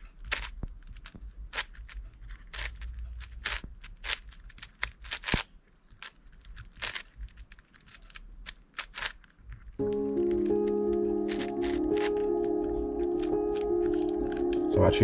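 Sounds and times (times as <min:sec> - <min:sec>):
puzzle cube clicking turns: 0:00.2 - 0:09.4.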